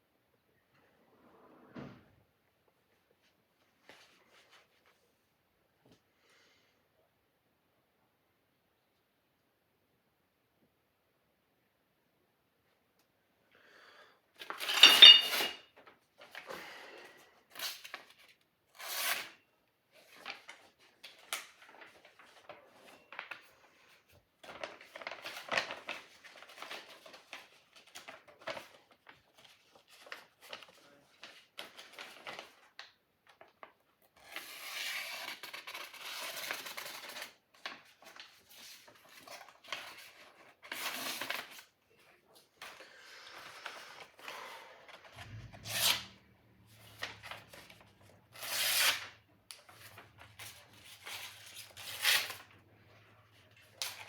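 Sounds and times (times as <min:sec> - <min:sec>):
metal blade clinking: 0:14.7 - 0:15.6.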